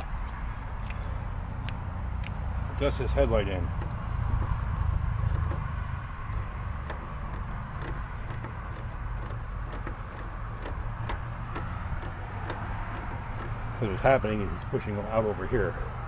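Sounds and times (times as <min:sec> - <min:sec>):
low background rumble: 0:00.0 - 0:16.0.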